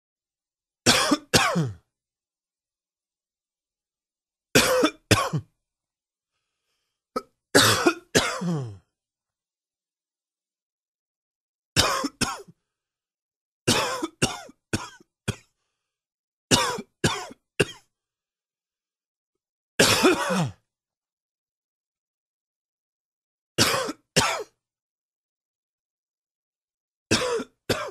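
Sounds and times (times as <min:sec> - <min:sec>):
man coughing: 0:00.9 - 0:01.8, 0:04.6 - 0:05.5, 0:07.2 - 0:08.8, 0:11.8 - 0:12.5, 0:13.7 - 0:15.4, 0:16.5 - 0:17.8, 0:19.8 - 0:20.6, 0:23.6 - 0:24.5, 0:27.1 - 0:27.9.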